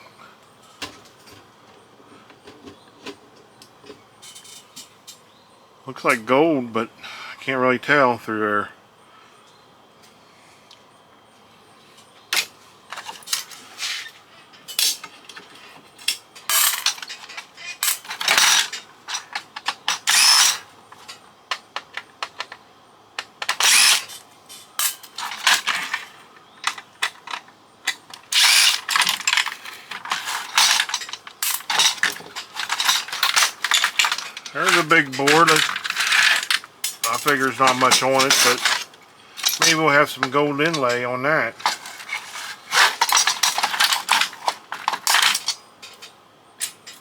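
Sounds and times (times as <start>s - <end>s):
plastic and metal parts clicking and rattling: 14.7s - 22.6s, 23.2s - 24.2s, 24.8s - 41.0s, 41.6s - 47.0s.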